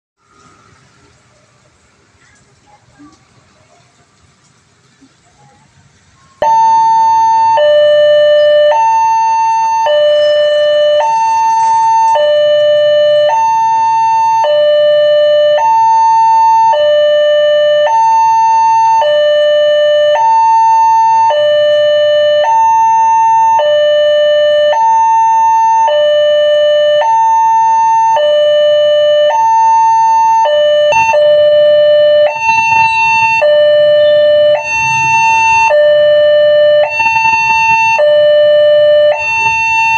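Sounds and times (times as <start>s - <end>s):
level crossing two-tone alarm: 6.4s - 39.9s.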